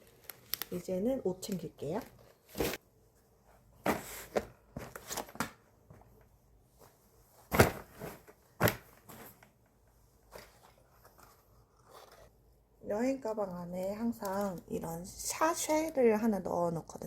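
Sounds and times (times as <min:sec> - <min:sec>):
clothes rustling: 0:01.8 - 0:12.2.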